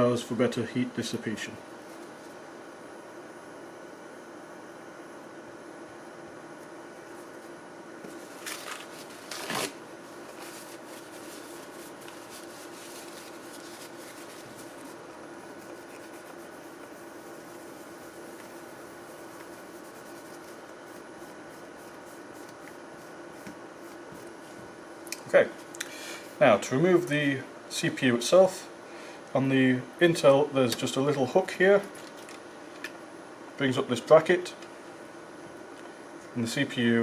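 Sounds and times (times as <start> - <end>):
steady background hum: 0.0 - 37.0
tissue paper rustling and rubbing: 8.1 - 20.6.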